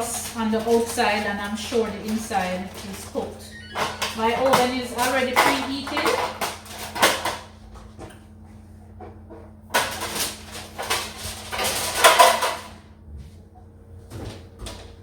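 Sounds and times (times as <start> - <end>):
metal pan scraping and clattering: 9.8 - 12.7.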